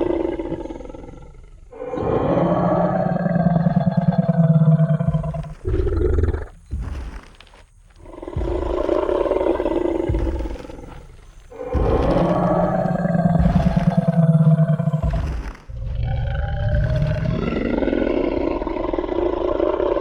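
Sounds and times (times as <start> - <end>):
dinosaur roar: 0.0 - 7.3, 8.0 - 20.0
low thuds: 3.1 - 18.1.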